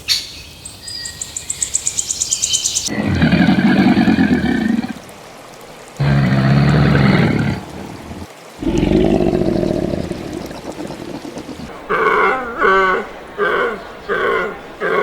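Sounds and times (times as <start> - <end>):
animal calls: 2.9 - 5.2, 5.9 - 15.0.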